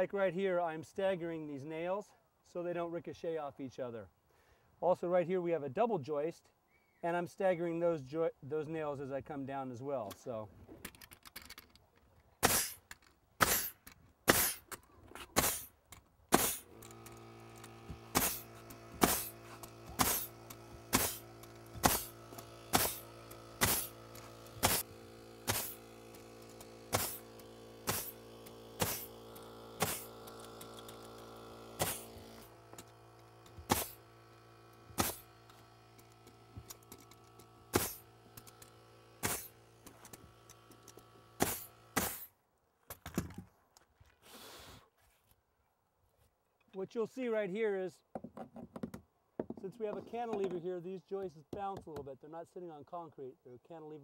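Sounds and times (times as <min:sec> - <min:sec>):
nail gun firing into wood: 0:12.4 - 0:15.7, 0:16.3 - 0:42.3
air compressor humming: 0:16.3 - 0:42.3.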